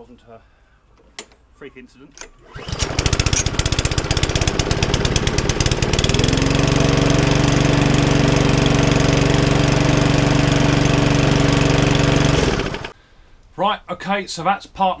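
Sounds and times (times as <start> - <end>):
lawnmower engine running: 2.4 - 13.0.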